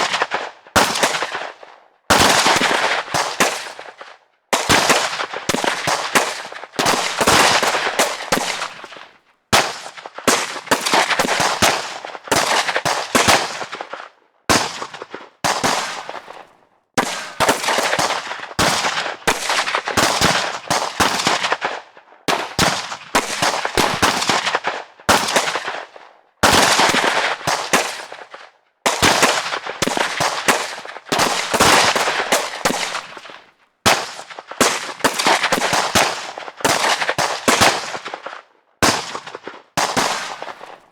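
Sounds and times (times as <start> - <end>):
rapid gunfire bursts: 4.6 - 9.0.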